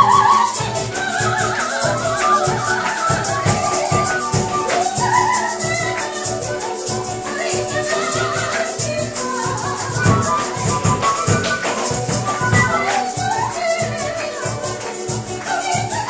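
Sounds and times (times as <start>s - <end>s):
rattles shaking a steady beat: 0.0s - 16.0s
wavering melody: 0.0s - 16.0s.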